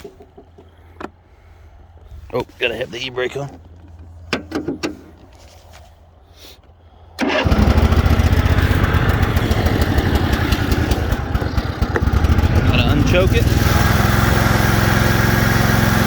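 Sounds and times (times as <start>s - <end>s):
mower engine starting and running: 7.2s - 16.0s.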